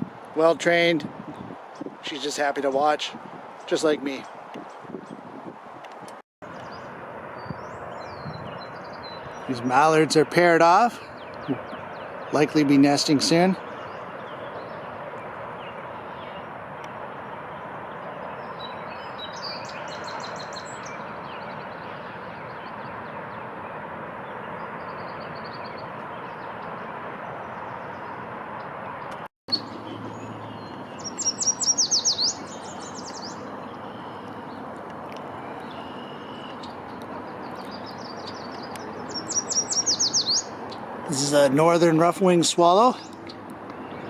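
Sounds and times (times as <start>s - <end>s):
outdoor background hiss: 5.4s - 44.0s
songbird singing high sweeping notes: 6.5s - 28.2s, 29.0s - 44.0s
faint distant bird calls: 6.5s - 44.0s.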